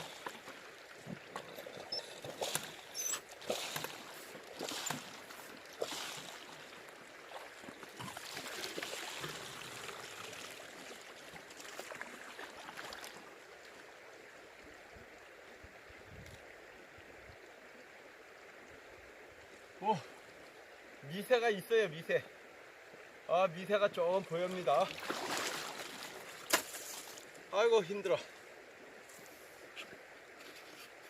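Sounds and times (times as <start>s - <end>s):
river running: 0.0s - 31.0s.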